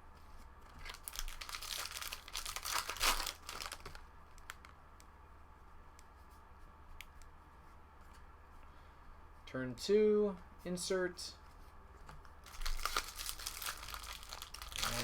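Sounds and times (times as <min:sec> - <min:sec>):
card pack wrapper tearing and crinkling: 0:00.7 - 0:04.7, 0:12.4 - 0:15.0.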